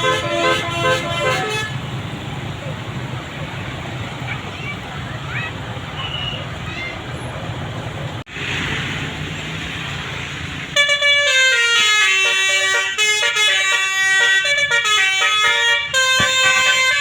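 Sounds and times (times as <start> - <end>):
musical air horn melody: 0.0 - 1.8, 10.8 - 17.0
road and engine noise: 0.0 - 17.0.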